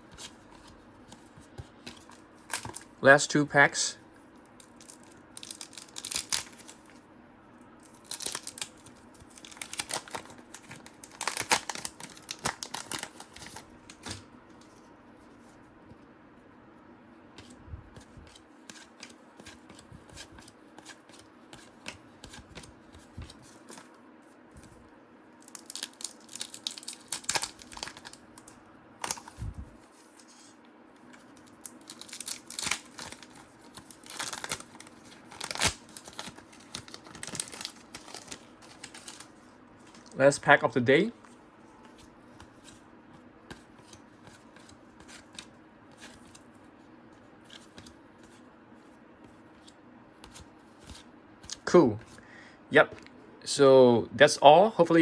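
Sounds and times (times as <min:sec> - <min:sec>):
wrappers tearing and crinkling: 0:04.6 - 0:06.9, 0:07.9 - 0:14.2, 0:25.4 - 0:29.4, 0:31.6 - 0:39.3.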